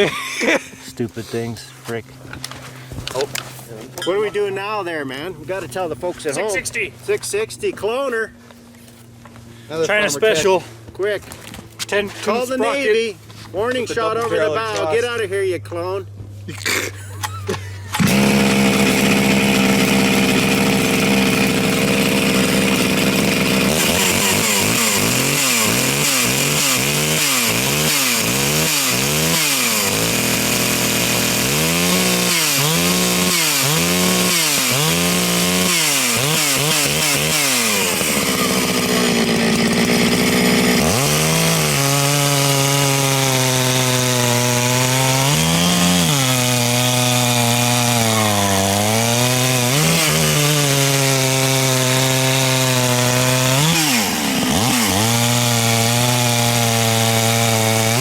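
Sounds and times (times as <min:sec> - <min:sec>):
chainsaw cutting wood: 0:16.6 - 0:58.0.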